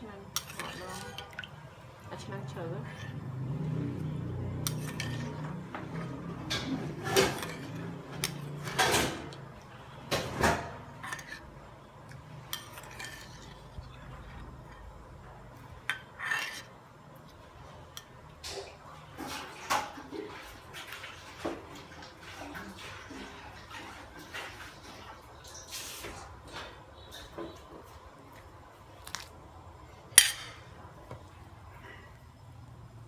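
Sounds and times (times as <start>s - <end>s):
utensils clinking against dishes: 4.6s - 9.4s.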